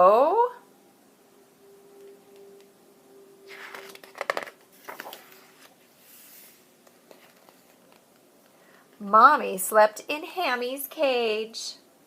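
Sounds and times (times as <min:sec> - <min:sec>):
paper page rustling: 0:03.5 - 0:08.2.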